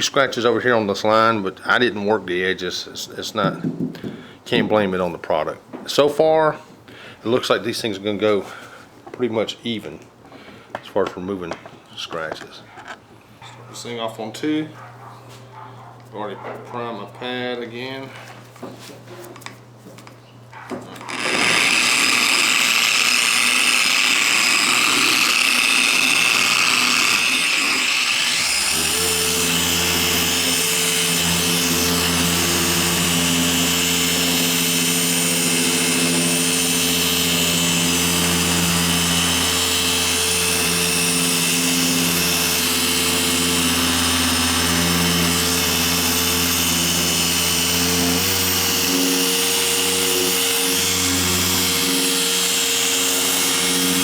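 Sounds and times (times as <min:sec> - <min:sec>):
machine polisher running: 0:21.0 - 0:54.0.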